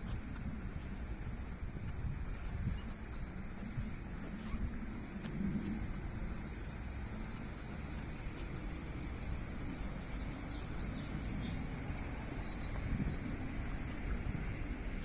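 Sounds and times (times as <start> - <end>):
cicadas droning: 0.0 - 15.0
bird chirps: 9.9 - 11.6.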